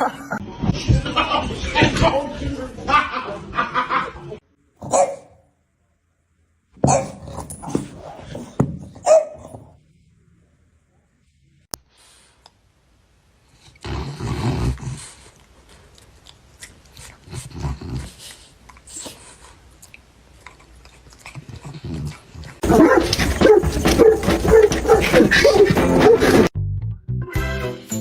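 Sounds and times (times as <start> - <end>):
dog growling and barking: 21.4 - 26.5.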